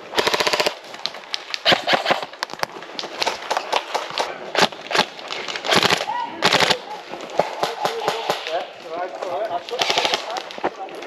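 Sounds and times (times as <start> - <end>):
airsoft guns firing: 0.1 - 0.8, 1.6 - 2.3, 3.2 - 8.7, 9.7 - 10.4.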